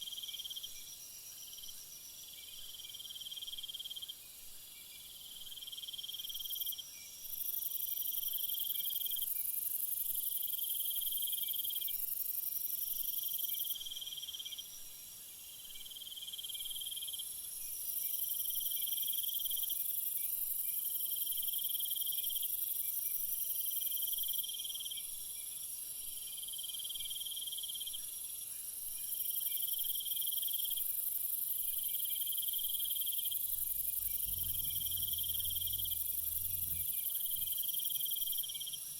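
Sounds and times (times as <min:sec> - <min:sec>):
rhythmic chirped insect calls: 0:00.0 - 0:38.9
insects trilling: 0:28.6 - 0:38.9.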